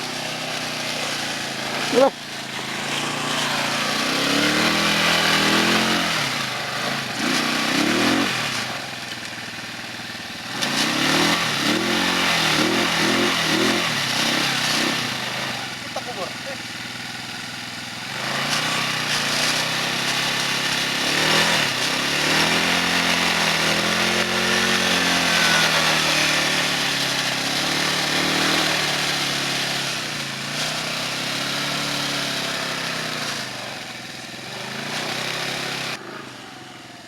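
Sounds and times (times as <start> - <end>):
motorcycle engine revving: 0.0 - 37.0.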